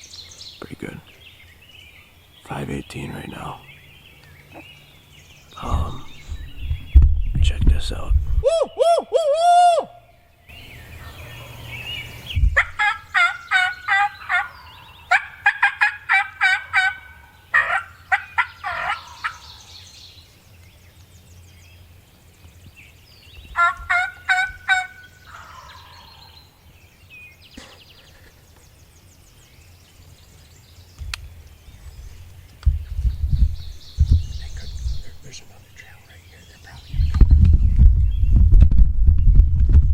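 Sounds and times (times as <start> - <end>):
turkey yelps: 8.4 - 10.0, 12.6 - 19.6, 23.6 - 26.4.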